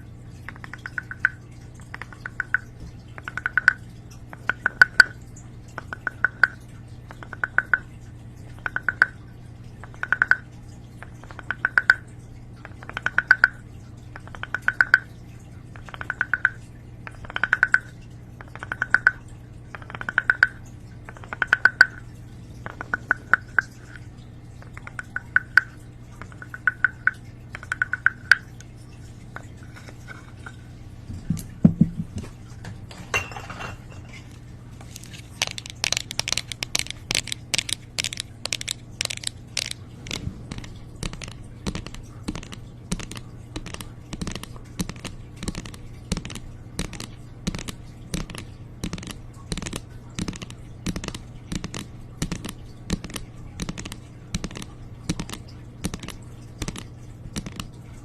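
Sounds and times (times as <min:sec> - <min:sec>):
crisp crackling taps: 0:34.2 - 0:57.8.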